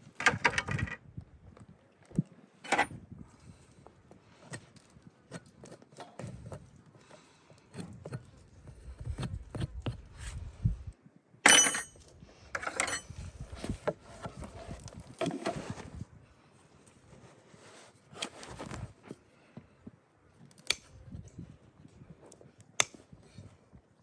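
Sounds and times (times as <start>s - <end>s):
sharp metallic clack: 11.5s - 12.0s.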